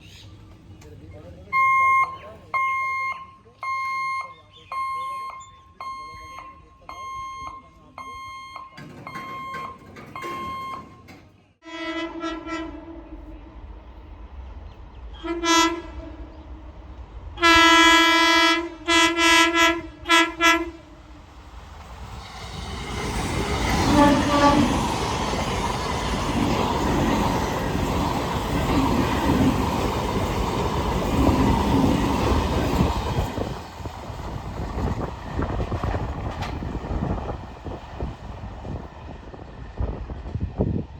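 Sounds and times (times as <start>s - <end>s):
electronic warning beeps: 1.5s - 11.2s
wheels clacking over rail joints: 8.6s - 11.6s, 20.1s - 40.4s
train rumbling and rattling on rails: 8.7s - 40.9s
train horn: 11.6s - 13.6s, 15.2s - 16.4s, 17.4s - 20.9s, 23.2s - 26.1s.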